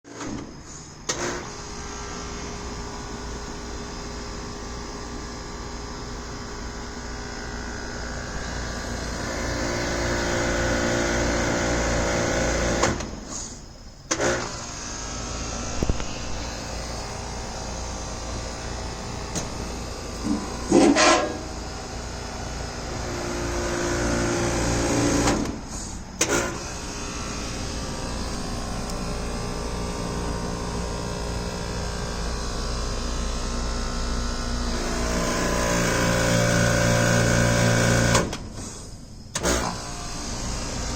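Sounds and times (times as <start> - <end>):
air conditioning unit humming: 13.6 - 40.9.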